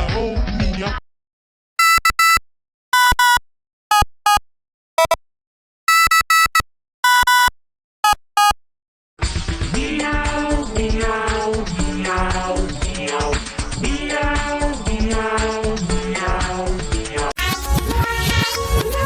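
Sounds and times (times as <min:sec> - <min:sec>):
short electronic beeps: 0:01.8 - 0:02.4, 0:03.0 - 0:04.4, 0:05.0 - 0:05.2, 0:05.9 - 0:08.6.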